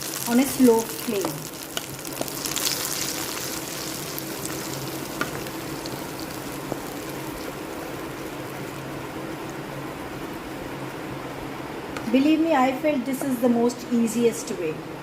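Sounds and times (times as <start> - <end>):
paste sizzling in hot oil: 0.0 - 10.6.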